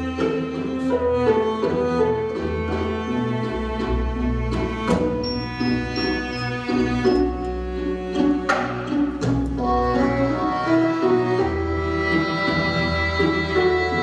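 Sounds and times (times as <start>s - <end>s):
bowed string notes: 0.0s - 14.0s
sharp percussive strikes: 4.9s - 7.4s.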